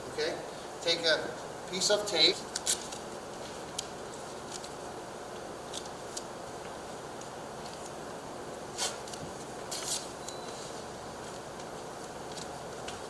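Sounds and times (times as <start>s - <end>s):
steady background hiss: 0.0s - 13.0s
tape tearing: 2.5s - 3.0s
paper rustling: 8.7s - 13.0s.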